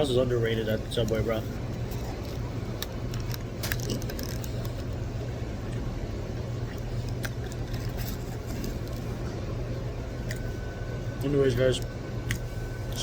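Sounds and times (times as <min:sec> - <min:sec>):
steady low hum: 0:00.0 - 0:13.0
person crunching chips: 0:01.9 - 0:04.8.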